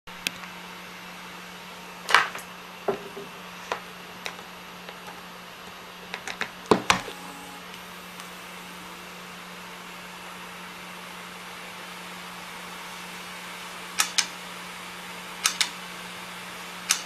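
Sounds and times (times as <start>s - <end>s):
steady hum: 0.1s - 17.0s
hard disk drive clicking: 6.1s - 8.4s, 13.9s - 14.4s, 15.4s - 15.8s.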